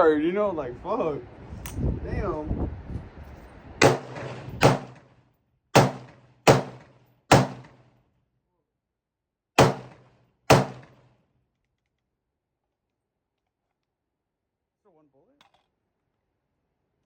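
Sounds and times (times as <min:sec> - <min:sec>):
gunshots with ringing echo: 0:03.8 - 0:05.0, 0:05.8 - 0:07.8, 0:09.6 - 0:11.0.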